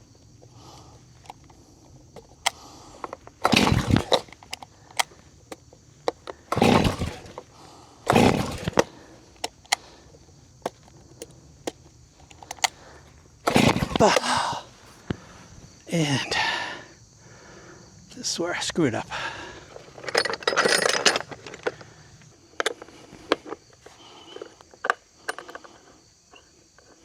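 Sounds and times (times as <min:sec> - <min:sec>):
small clicks and knocks: 0:00.2 - 0:07.5, 0:08.1 - 0:14.0, 0:20.0 - 0:27.0
chainsaw starter cord yanks: 0:00.3 - 0:15.2, 0:19.3 - 0:26.5.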